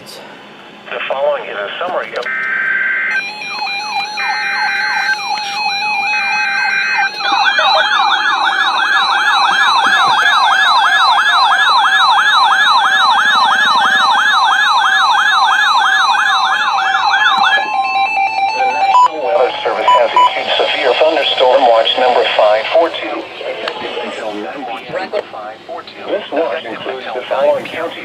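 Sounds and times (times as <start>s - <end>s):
warbling siren alarm: 2.2s - 24.3s
screechy digital data bursts: 2.8s - 22.8s.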